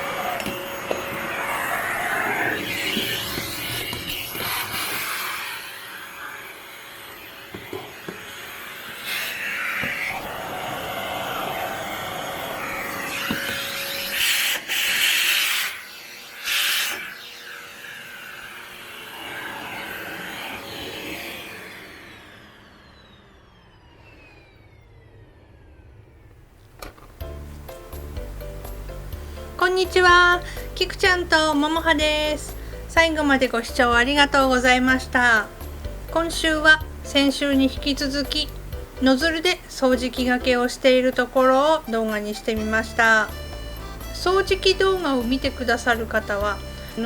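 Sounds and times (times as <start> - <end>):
nozzle scraping carpet: 0.0 - 5.8
rushing suction surges: 0.0 - 7.4, 8.5 - 22.9
motor whine spinning down: 0.0 - 47.0
vacuum cleaner running: 0.0 - 47.0.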